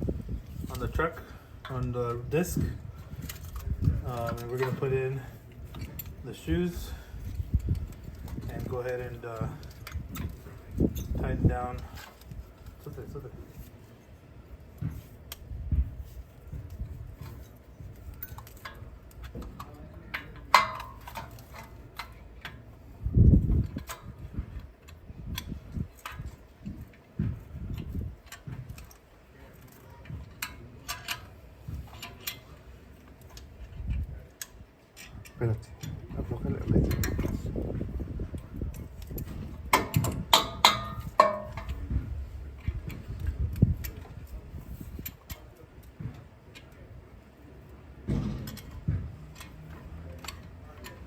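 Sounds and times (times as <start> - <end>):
metal tools clanking: 0.4 - 13.6, 16.7 - 22.8, 38.7 - 42.0, 48.1 - 51.0
metallic tool clicks and taps: 39.0 - 41.8
dull low thud: 48.1 - 49.2.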